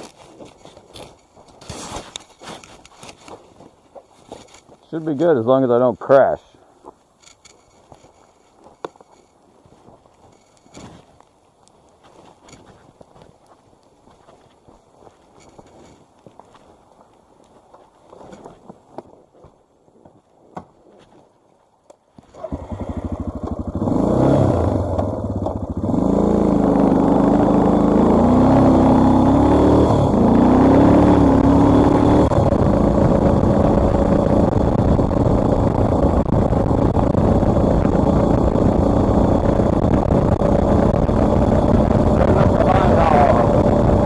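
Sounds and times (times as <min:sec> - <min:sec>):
motorcycle engine revving: 0:22.3 - 0:44.0
wind noise: 0:28.9 - 0:44.0.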